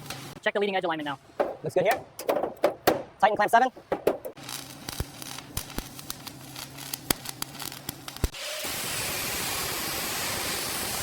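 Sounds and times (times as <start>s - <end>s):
steady spray hiss: 4.7s - 11.0s.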